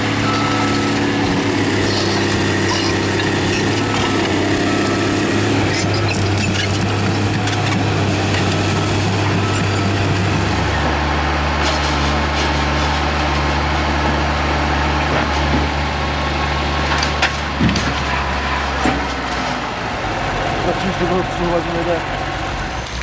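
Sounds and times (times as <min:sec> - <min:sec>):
thin high whine: 0:00.0 - 0:13.6, 0:19.4 - 0:23.0
heavy machine engine running: 0:00.0 - 0:23.0.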